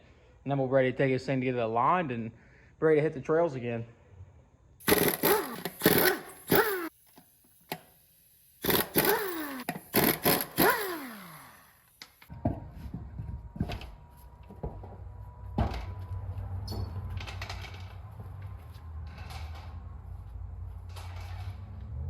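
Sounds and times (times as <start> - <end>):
power tool bursts winding down: 4.8 - 6.9, 8.6 - 11.9.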